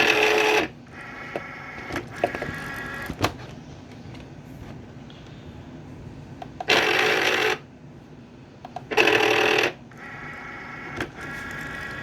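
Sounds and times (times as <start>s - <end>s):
machine motor whir: 8.9s - 12.0s.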